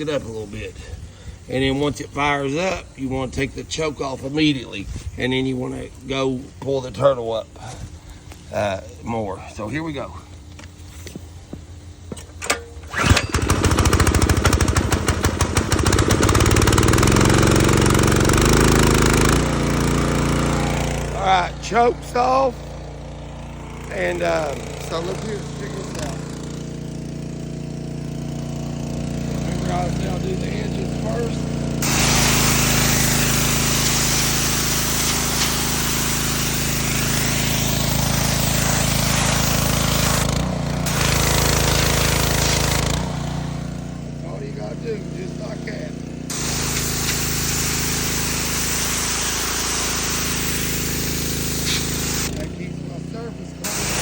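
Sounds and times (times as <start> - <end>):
pressure washer engine running: 0.0 - 54.0
pull cord starting engine: 12.2 - 44.2
high-pressure water spray hissing: 13.0 - 22.9, 23.6 - 43.9, 46.3 - 52.5, 53.6 - 54.0.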